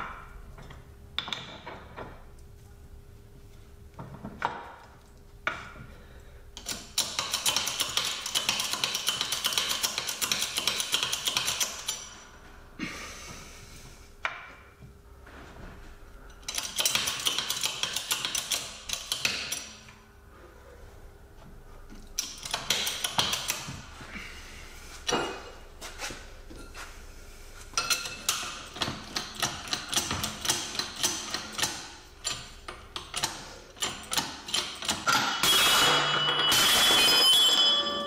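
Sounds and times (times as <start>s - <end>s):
hand tools clicking on metal: 6.6s - 12.2s, 16.3s - 20.0s, 22.2s - 23.7s, 27.8s - 37.3s.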